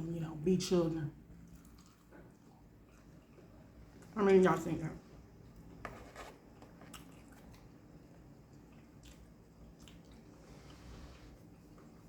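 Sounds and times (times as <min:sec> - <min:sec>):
person chewing: 0:01.4 - 0:04.1, 0:06.5 - 0:10.8.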